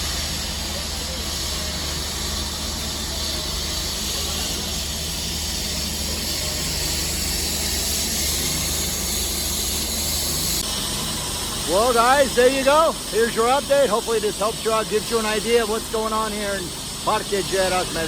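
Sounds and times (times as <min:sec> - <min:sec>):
steady hiss: 0:00.0 - 0:18.0.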